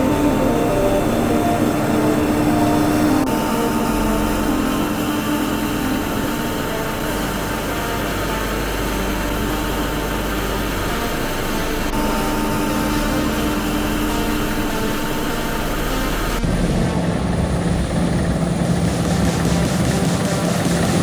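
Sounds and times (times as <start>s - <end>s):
combine harvester machinery hum: 0.0s - 21.0s.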